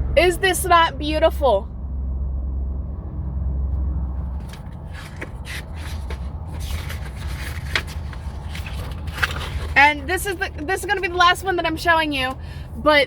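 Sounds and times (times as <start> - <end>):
paper rustling and crinkling: 4.3 - 11.8.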